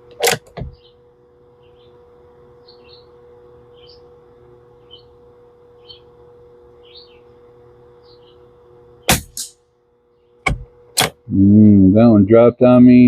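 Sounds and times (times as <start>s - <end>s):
faint steady hum: 0.0s - 13.0s
bird chirping: 0.7s - 1.0s, 1.6s - 2.0s, 2.6s - 4.1s, 4.8s - 5.2s, 5.8s - 6.2s, 6.8s - 7.4s, 8.0s - 8.5s.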